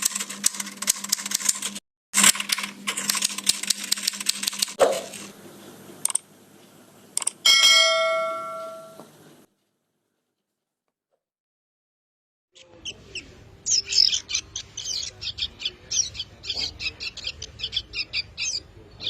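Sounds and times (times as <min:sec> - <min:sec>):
fast mechanical clicking: 0:00.0 - 0:05.2, 0:06.0 - 0:06.2, 0:07.2 - 0:07.4
bell-like ding: 0:07.5 - 0:09.1.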